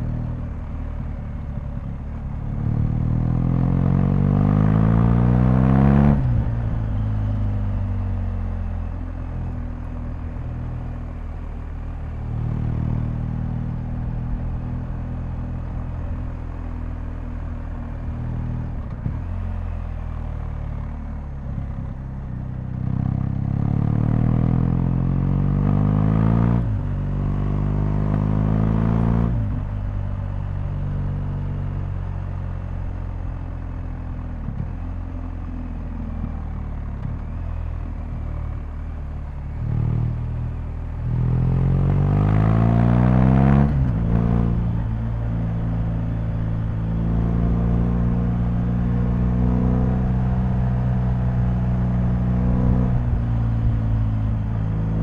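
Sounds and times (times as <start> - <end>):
motorcycle engine revving: 22.7 - 55.0.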